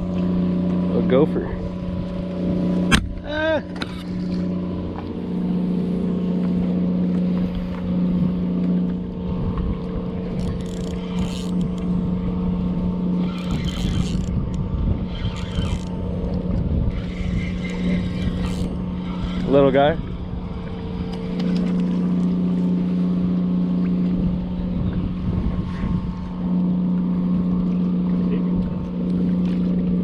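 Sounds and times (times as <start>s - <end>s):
engine idling hum: 0.0s - 30.0s.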